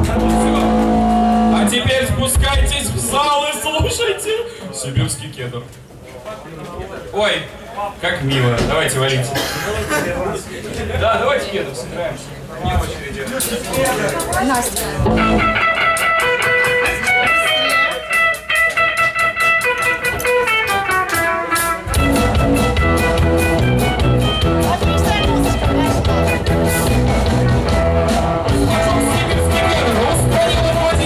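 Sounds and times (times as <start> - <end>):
picked guitar melody: 0.0 - 1.8, 15.0 - 31.0
bass guitar: 0.0 - 2.0, 15.0 - 31.0
drum strokes: 0.0 - 3.2, 12.8 - 31.0.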